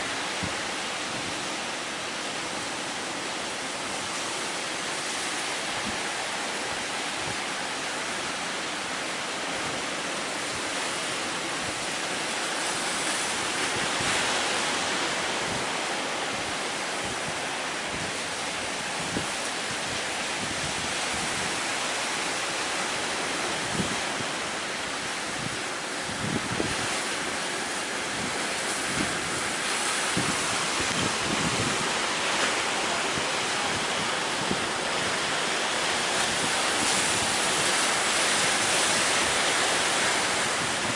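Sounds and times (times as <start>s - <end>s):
roar of breaking waves: 0.0s - 40.9s
wind thudding on microphone: 0.1s - 1.5s, 12.8s - 40.9s.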